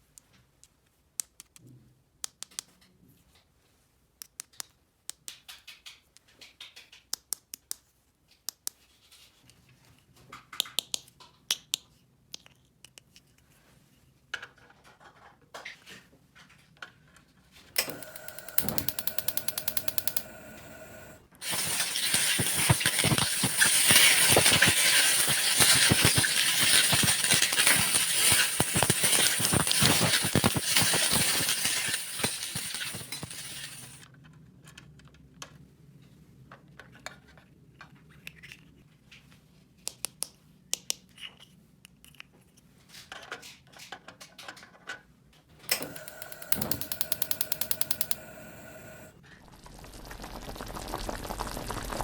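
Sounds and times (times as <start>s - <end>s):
loud crackling rattling noise: 21.4s - 34.0s, 45.7s - 49.0s
plastic toy pieces clicking: 21.4s - 34.0s.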